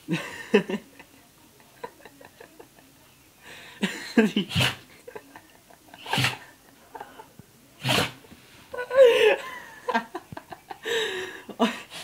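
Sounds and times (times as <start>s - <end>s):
dog sneezing: 4.5s - 4.8s, 6.0s - 6.4s, 7.8s - 8.2s.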